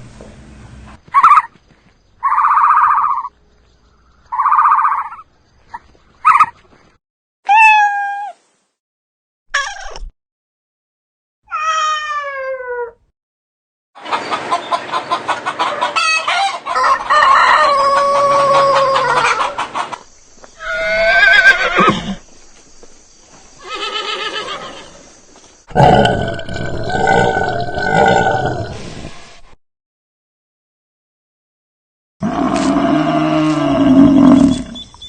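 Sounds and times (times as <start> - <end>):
animal calls: 1.1 - 1.5, 2.2 - 3.3, 4.3 - 6.6, 23.6 - 25.0, 32.2 - 35.0.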